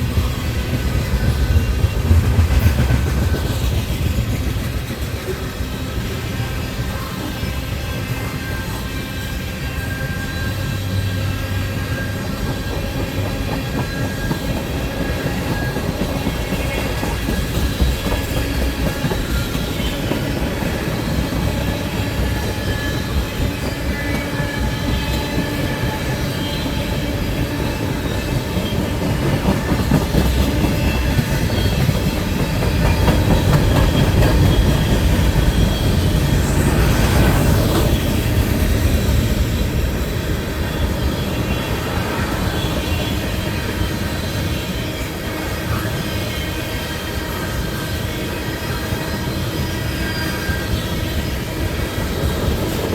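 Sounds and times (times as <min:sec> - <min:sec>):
train wheels clacking over rail joints: 0:00.0 - 0:06.3, 0:12.0 - 0:40.0
wheels squealing on rails: 0:00.0 - 0:52.9.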